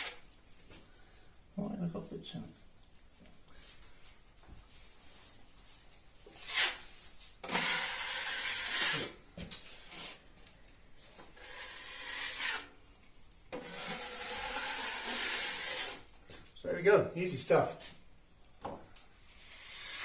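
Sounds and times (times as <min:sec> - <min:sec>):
spatula scraping filler on drywall: 0:06.4 - 0:06.9, 0:07.5 - 0:10.2, 0:11.4 - 0:12.7, 0:13.6 - 0:16.1, 0:19.3 - 0:20.0.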